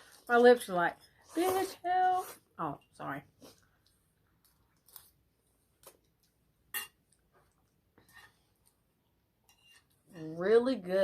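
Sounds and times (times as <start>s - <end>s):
tableware clinking: 6.7s - 7.0s.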